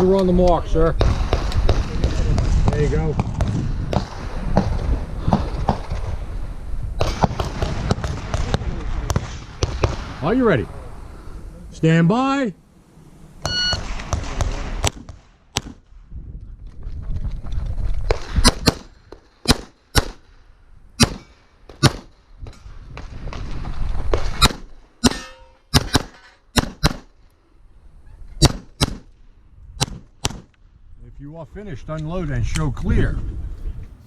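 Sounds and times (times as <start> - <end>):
shot timer beep: 13.4 - 13.8
pistol shots: 18.1 - 20.2, 21.0 - 22.1, 24.2 - 27.1, 28.4 - 29.1, 29.8 - 30.5.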